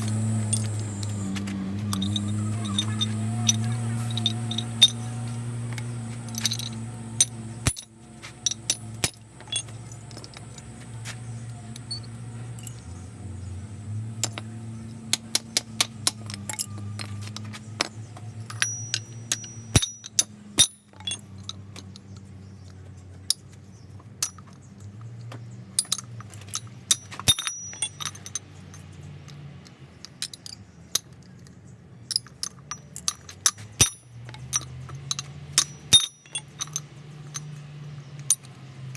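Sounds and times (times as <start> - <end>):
steady low hum: 0.0 - 20.1
metal tools clinking: 0.0 - 22.1, 25.8 - 29.0, 30.0 - 31.4, 32.1 - 38.6.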